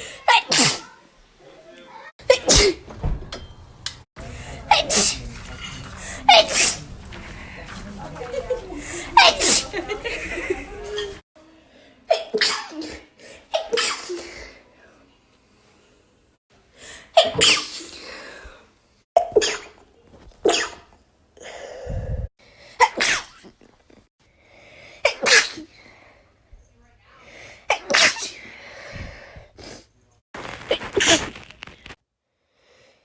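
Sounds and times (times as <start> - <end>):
person sneezing: 0.0 - 1.0, 2.3 - 2.8, 17.2 - 18.2, 25.0 - 25.7, 27.7 - 28.5.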